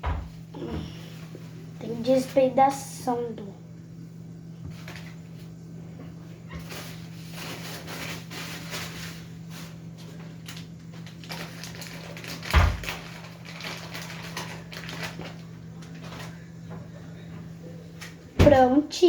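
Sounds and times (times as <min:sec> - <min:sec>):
steady low hum: 0:00.0 - 0:19.0
kitchen rustles and clicks: 0:04.6 - 0:19.0.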